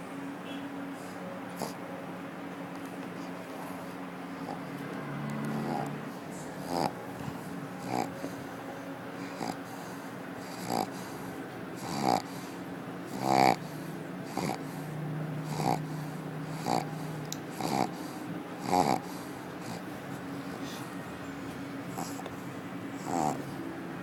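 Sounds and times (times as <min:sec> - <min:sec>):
dog snoring: 0:01.5 - 0:01.8, 0:03.6 - 0:04.8, 0:05.4 - 0:07.0, 0:07.7 - 0:08.4, 0:09.2 - 0:20.9, 0:21.9 - 0:22.4, 0:23.0 - 0:23.6.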